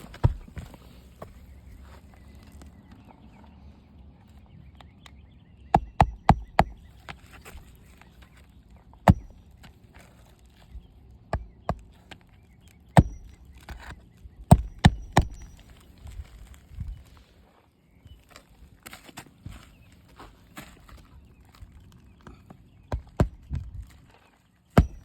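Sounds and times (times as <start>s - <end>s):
hammer striking nails: 5.8s - 6.8s, 9.1s - 9.4s, 13.0s - 13.9s, 14.5s - 15.5s, 24.8s - 25.0s.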